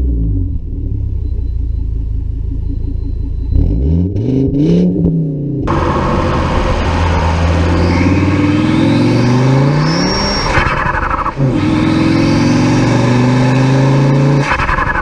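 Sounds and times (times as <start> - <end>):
turbocharged car engine pulling hard: 5.7 - 15.0.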